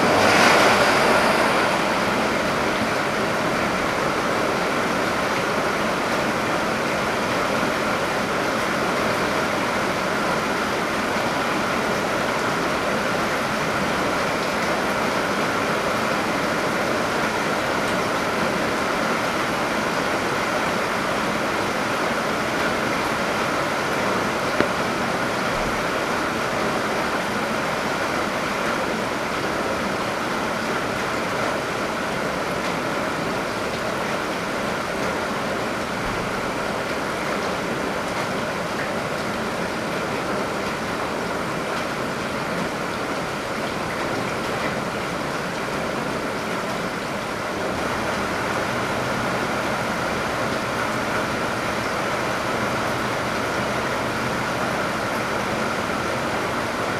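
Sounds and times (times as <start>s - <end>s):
heavy rain: 0.0s - 56.9s
water pouring from downpipe: 0.0s - 56.9s.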